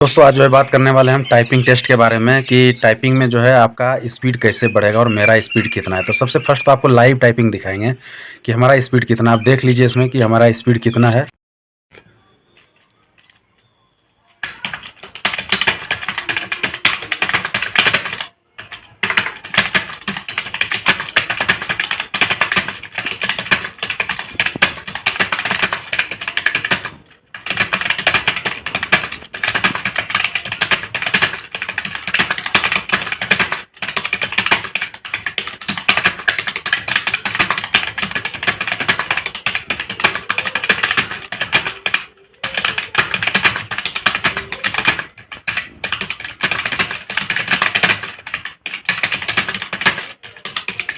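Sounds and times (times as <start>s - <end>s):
fast typing on keyboard: 0.0s - 11.2s, 14.4s - 50.9s.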